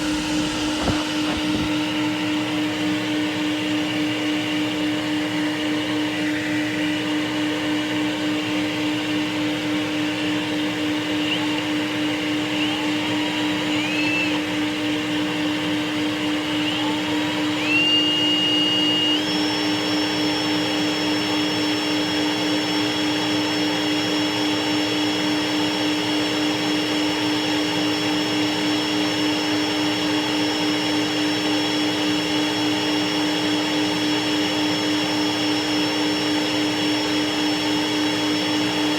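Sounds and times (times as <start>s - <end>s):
short rising squeals: 0.0s - 2.2s
high steady whistle: 0.0s - 2.5s, 10.8s - 15.0s, 16.2s - 23.7s
electric motor humming and whining: 0.0s - 38.9s.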